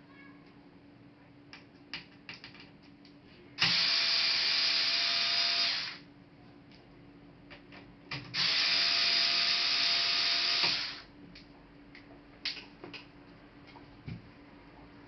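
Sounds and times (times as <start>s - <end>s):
electric screwdriver running: 3.6s - 6.0s, 8.4s - 11.1s.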